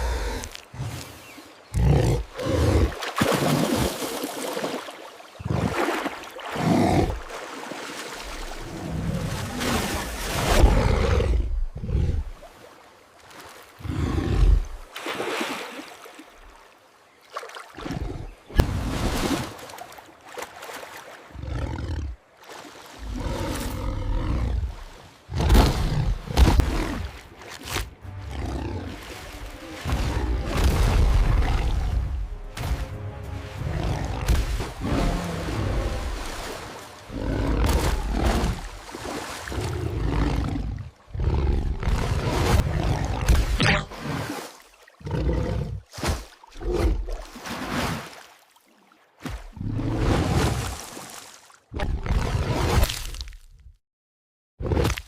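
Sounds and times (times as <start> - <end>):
surging splashing water: 2.2 - 10.8, 28.8 - 40.1.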